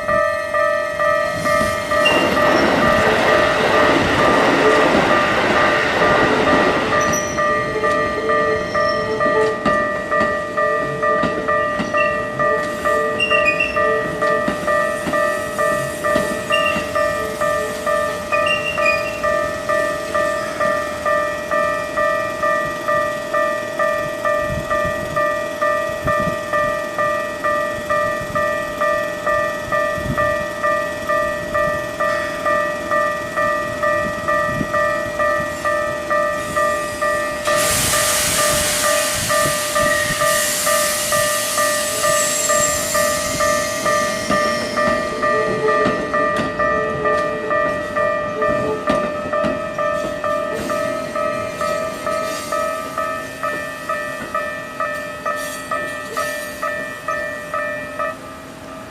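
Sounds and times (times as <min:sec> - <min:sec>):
level-crossing bell ringing: 0:00.0 - 0:37.7, 0:38.5 - 0:58.9
loud steady hiss: 0:36.4 - 0:44.5.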